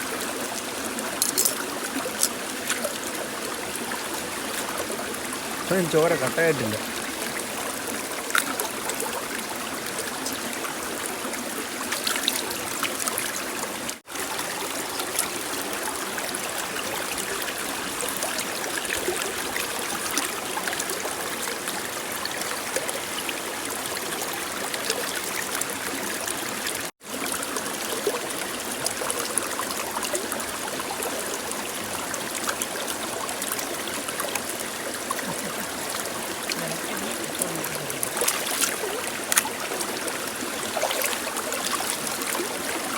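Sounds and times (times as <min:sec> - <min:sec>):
running water: 0:00.0 - 0:42.9
small splashes and clicks: 0:01.1 - 0:03.3, 0:08.1 - 0:10.5, 0:11.8 - 0:15.6, 0:34.2 - 0:42.9.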